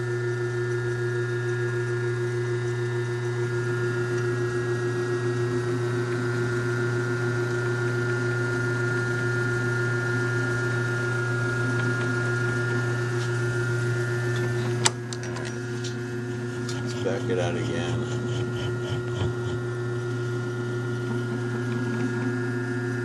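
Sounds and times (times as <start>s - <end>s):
lathe motor hum: 0.0s - 23.0s
high whine: 15.5s - 21.1s.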